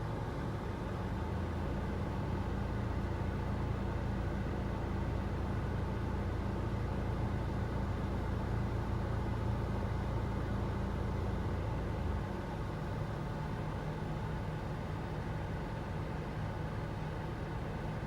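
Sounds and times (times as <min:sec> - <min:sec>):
diesel engine rumble inside car: 0:00.0 - 0:18.0.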